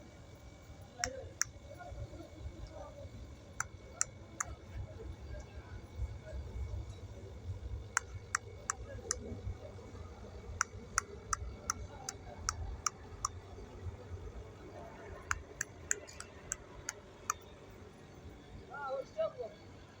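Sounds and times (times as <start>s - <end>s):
sharp clicks: 15.2s - 17.4s.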